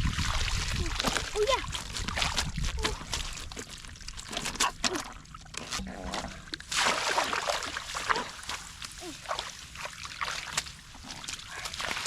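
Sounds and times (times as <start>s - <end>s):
water splashing and sloshing: 0.0s - 12.0s.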